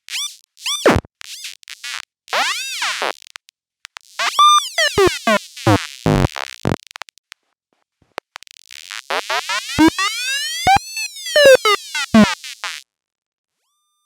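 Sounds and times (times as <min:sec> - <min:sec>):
robot beeps and chirps: 0:00.1 - 0:03.3, 0:04.2 - 0:07.1, 0:08.3 - 0:12.8.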